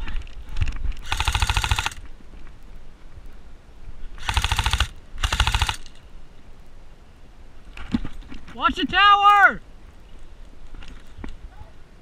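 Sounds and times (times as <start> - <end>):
airsoft gun full-auto bursts: 1.0 - 2.0, 4.2 - 6.0.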